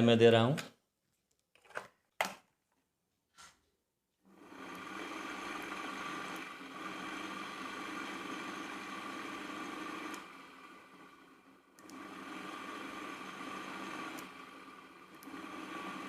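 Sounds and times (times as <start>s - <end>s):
fan motor humming and whirring: 4.4s - 16.0s.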